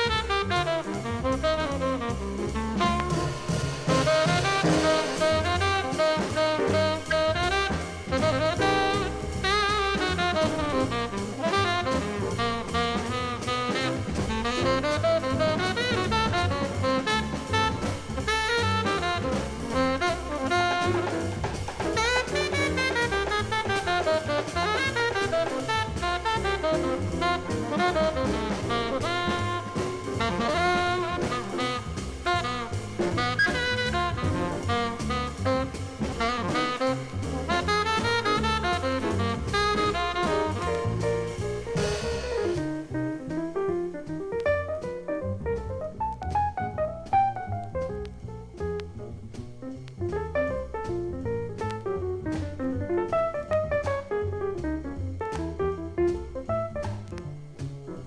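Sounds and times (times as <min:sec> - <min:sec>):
saxophone lines: 0:00.0 - 0:42.6
drum kit steady beat: 0:00.0 - 0:58.0.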